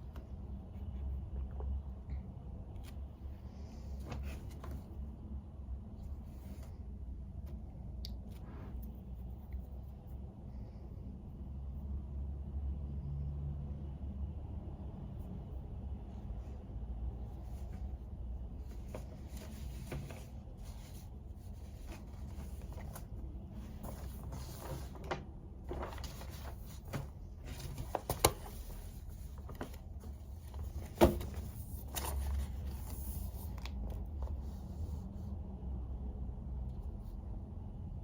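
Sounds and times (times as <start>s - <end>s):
low steady hum: 0.0s - 38.0s
scratchy handling noises: 17.2s - 35.1s.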